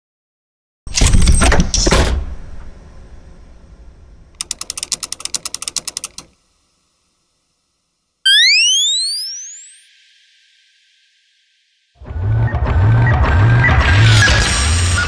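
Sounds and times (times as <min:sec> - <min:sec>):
fast mechanical clicks: 0:04.3 - 0:06.4.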